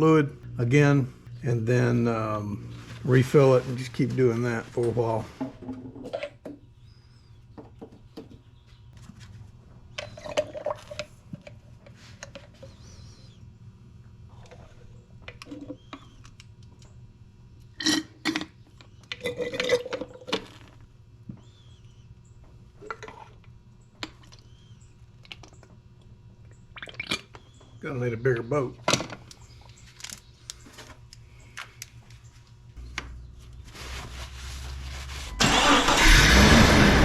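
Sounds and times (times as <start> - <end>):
steady low hum: 0.0 - 5.6, 27.5 - 37.0.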